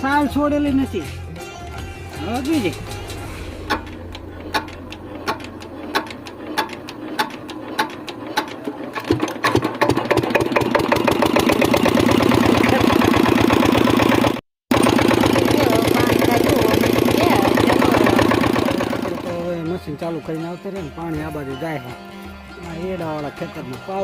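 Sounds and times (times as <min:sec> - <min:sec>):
engine starting and running: 0:01.6 - 0:19.7.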